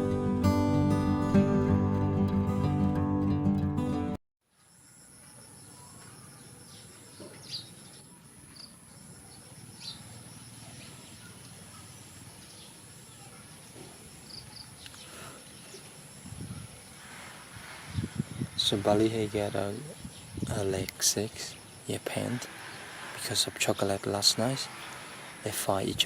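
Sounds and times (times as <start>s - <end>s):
insect chorus drone: 4.5s - 26.0s
pulsing insect chirp: 4.6s - 26.0s.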